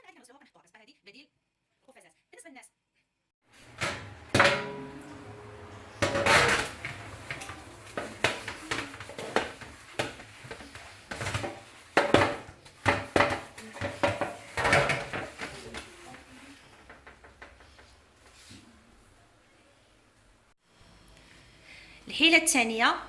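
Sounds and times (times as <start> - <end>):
dishes and utensils clinking: 3.6 - 17.6.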